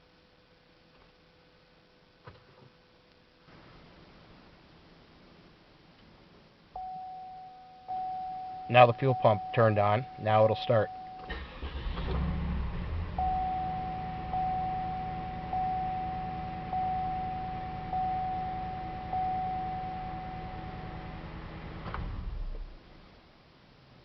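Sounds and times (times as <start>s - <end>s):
steady low hum: 0.0s - 24.0s
dashboard warning chime dinging: 6.8s - 11.4s, 13.2s - 21.2s.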